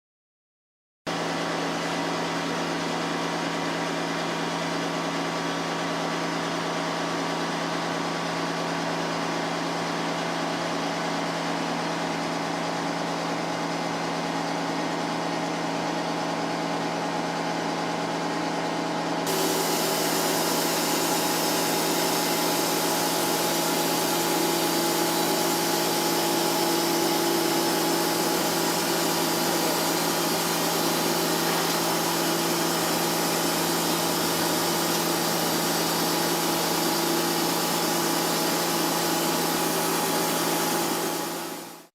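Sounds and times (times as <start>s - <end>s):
steady machine whine: 16.3s - 41.9s
metal cutting noise: 19.3s - 41.8s
milling machine hum: 19.3s - 41.9s.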